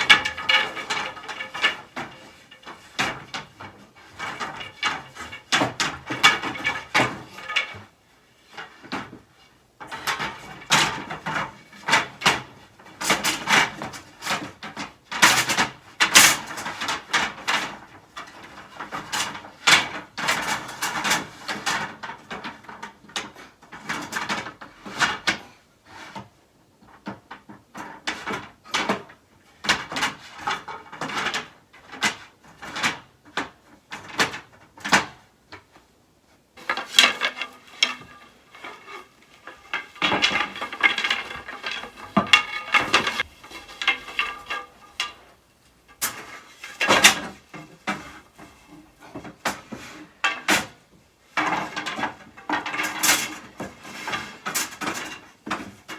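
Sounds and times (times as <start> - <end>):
wood knocking on wood: 36.6 - 45.4.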